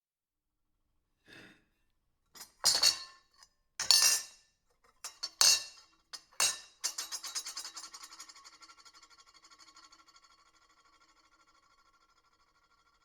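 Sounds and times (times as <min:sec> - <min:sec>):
silverware clinking on plate: 0:02.4 - 0:03.2, 0:03.8 - 0:04.3, 0:05.0 - 0:08.2.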